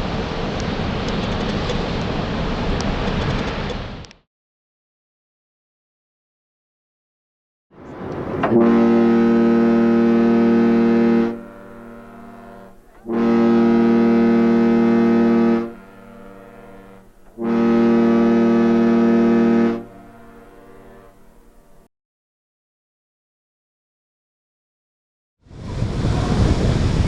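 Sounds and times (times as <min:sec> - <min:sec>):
ship horn blasts: 0:07.8 - 0:21.9.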